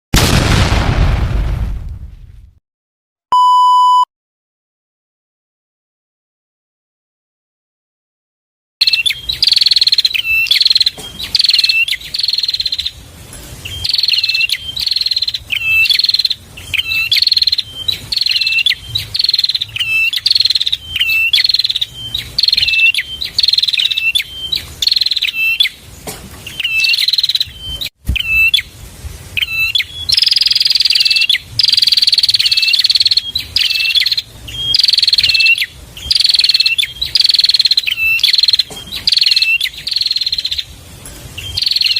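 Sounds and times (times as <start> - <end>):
bird chirping: 8.8 - 13.0, 13.6 - 28.7, 29.4 - 40.7, 41.4 - 41.9.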